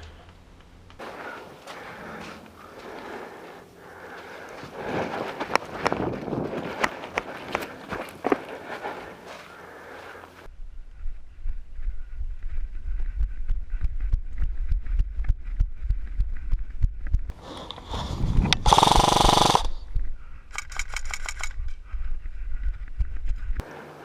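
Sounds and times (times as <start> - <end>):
steady rumble: 0.0 - 23.6
airsoft gun rattle of clicks: 20.5 - 21.8.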